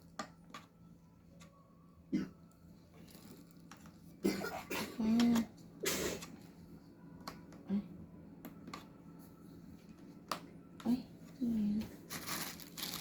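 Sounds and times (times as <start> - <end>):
person coughing: 2.1 - 2.4, 4.2 - 5.2.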